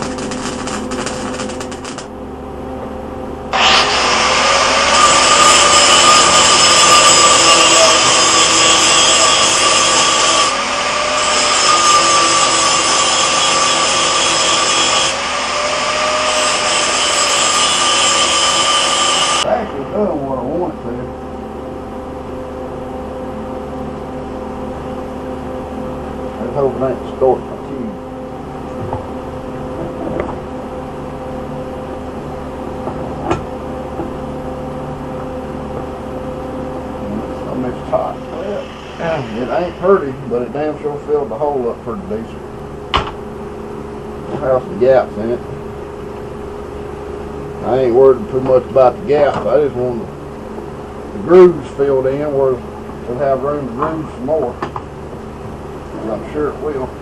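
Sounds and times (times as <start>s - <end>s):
welder arc hissing and crackling: 0.0s - 2.1s, 3.5s - 19.5s, 37.5s - 40.9s
machine hum: 0.0s - 57.0s.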